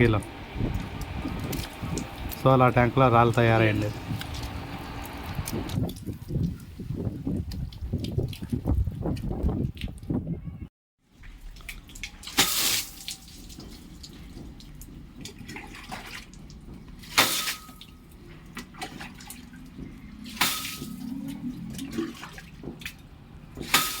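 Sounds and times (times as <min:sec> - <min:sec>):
water running in a tank: 0:00.0 - 0:09.5, 0:11.1 - 0:24.0
sharp water splashes: 0:00.2 - 0:06.6, 0:11.1 - 0:24.0.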